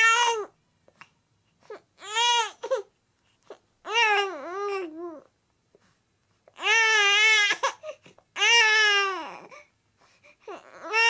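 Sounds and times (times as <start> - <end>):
baby whining cries: 0.0 - 0.6, 1.6 - 2.9, 3.5 - 5.3, 6.6 - 9.7, 10.3 - 11.0.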